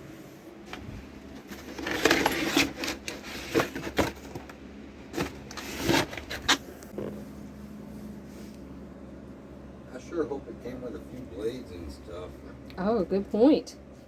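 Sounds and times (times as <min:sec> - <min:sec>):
packaging rustling: 0:00.7 - 0:06.7.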